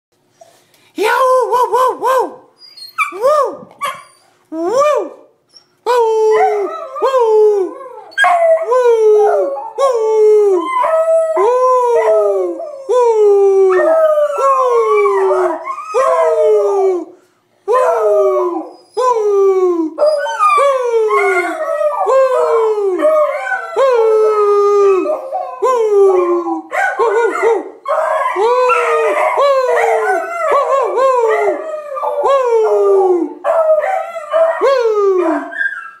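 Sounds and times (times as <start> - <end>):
beagles howling: 20.0 - 36.0.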